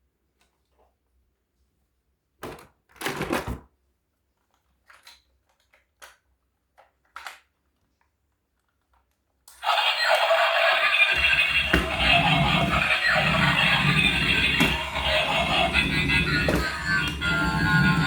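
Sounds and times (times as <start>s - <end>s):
toy cars knocking and clicking: 4.6s - 7.8s.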